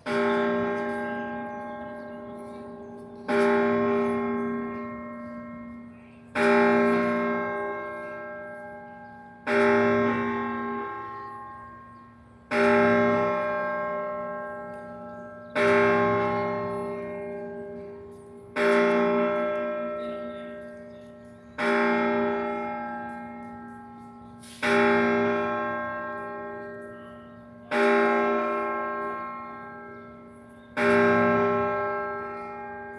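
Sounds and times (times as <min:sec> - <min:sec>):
clock bell striking: 0:00.0 - 0:32.9.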